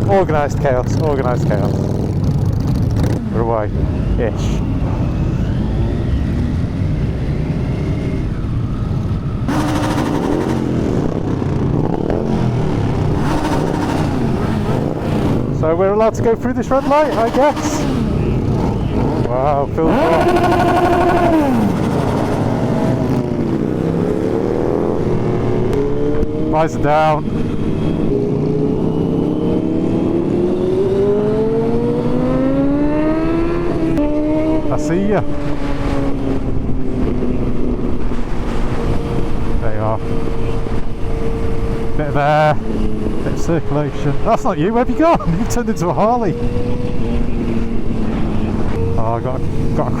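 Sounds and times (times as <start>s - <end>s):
motorcycle engines revving: 0.0s - 50.0s
road and wind noise: 0.0s - 50.0s
loud rushing noise: 9.4s - 15.5s.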